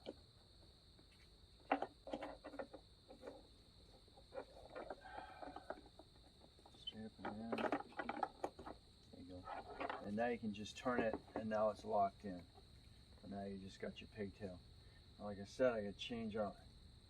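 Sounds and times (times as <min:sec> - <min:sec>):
crickets trilling: 0:00.0 - 0:17.0.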